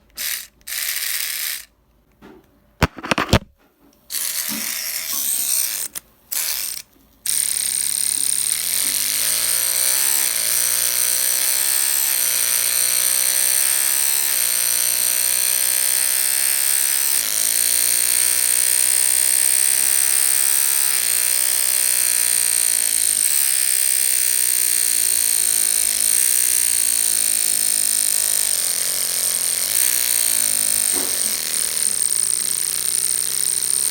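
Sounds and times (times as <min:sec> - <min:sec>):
electric toothbrush buzzing: 0:00.2 - 0:01.7, 0:04.1 - 0:33.9.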